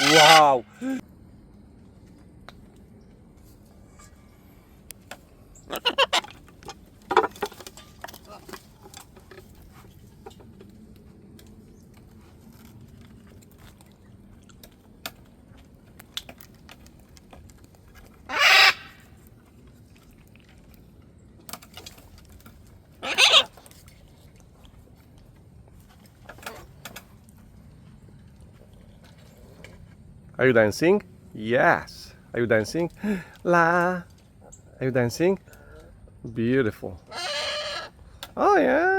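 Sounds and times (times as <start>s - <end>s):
parrot squawking: 0.0s - 0.8s, 5.7s - 6.3s, 18.3s - 19.0s, 23.0s - 23.6s, 37.1s - 38.0s.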